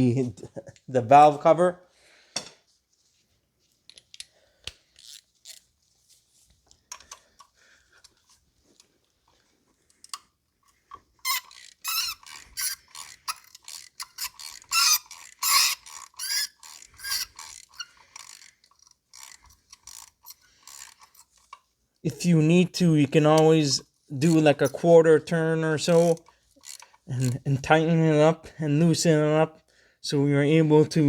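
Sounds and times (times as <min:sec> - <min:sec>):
tool handling clicks: 0:03.8 - 0:05.7, 0:06.7 - 0:21.6
hand ratchet clicking: 0:03.9 - 0:05.6, 0:09.9 - 0:21.6, 0:25.8 - 0:27.4.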